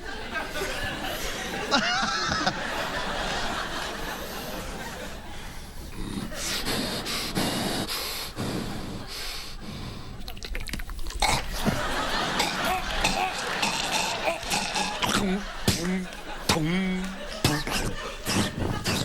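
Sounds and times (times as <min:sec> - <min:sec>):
man making vocal sound effects: 0:12.4 - 0:19.0.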